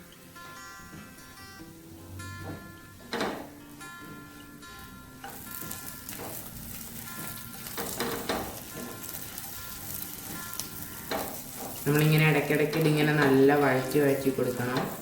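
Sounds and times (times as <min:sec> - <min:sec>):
bread sizzling in butter: 0:05.2 - 0:15.0.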